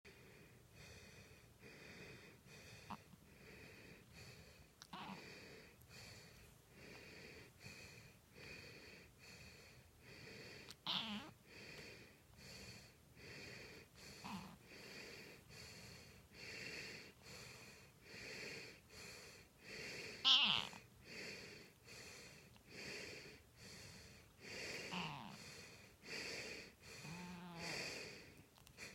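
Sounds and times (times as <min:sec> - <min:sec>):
cat calling: 0:10.8 - 0:11.4, 0:20.2 - 0:20.8
wheezy snoring: 0:27.0 - 0:28.3.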